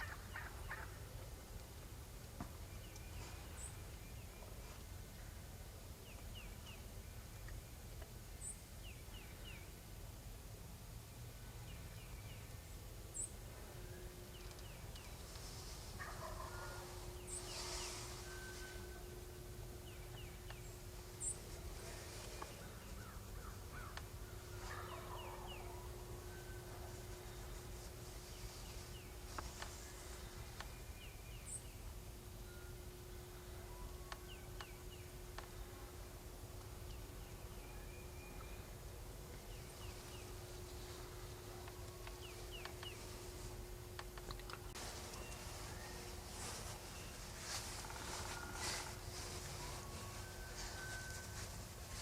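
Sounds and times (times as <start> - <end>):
turkey gobbling: 0.0 - 1.0, 16.0 - 17.0
small birds chirping: 11.6 - 32.0, 36.6 - 52.0.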